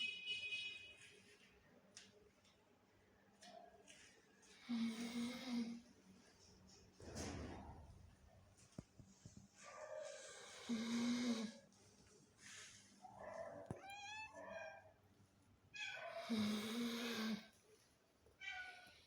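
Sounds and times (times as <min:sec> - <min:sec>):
pet snoring: 0:04.7 - 0:05.8, 0:10.2 - 0:11.6, 0:16.2 - 0:17.5.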